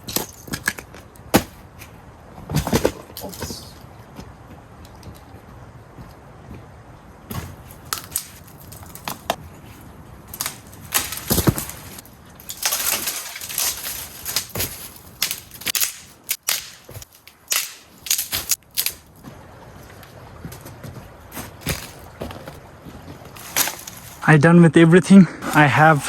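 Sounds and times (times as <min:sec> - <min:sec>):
crunching and rustling: 0:07.3 - 0:24.2
dry sticks cracking and snapping: 0:07.6 - 0:09.4, 0:10.3 - 0:19.2.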